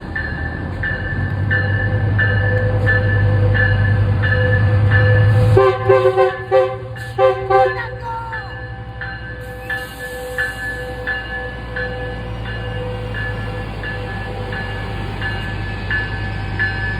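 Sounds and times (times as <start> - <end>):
locomotive bell ringing: 0.0 - 16.9
locomotive engine rumbling: 0.0 - 16.9
chorded horn blasts: 5.4 - 8.5.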